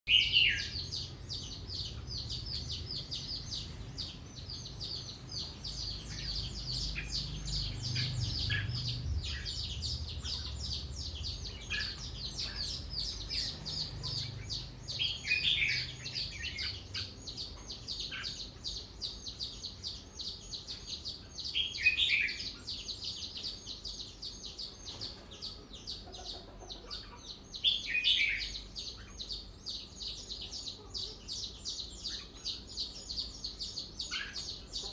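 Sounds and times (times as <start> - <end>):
bulbul singing warbled phrases: 0.0 - 34.9
fast high-pitched bird chatter: 0.1 - 34.9
low rumble: 5.7 - 13.9.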